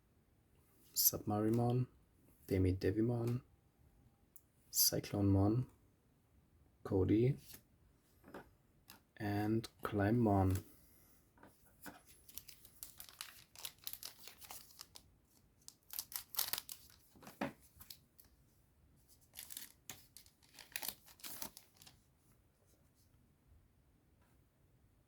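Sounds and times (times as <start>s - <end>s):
foil wrapper tearing and crinkling: 12.2s - 18.0s, 19.3s - 21.9s.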